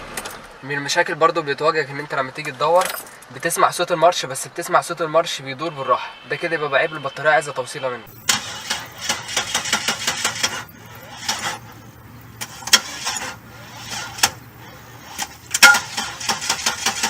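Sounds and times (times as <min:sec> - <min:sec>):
car starter motor cranking: 0:08.1 - 0:17.0
starter clicks: 0:08.1 - 0:17.0.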